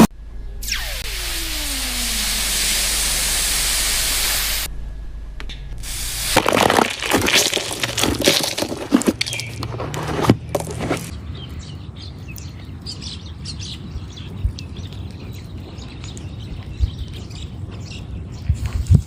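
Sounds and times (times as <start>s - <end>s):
low steady hum: 0.0s - 18.2s
loud crackling scraping noise: 5.8s - 11.2s
birds chirping: 9.1s - 19.0s.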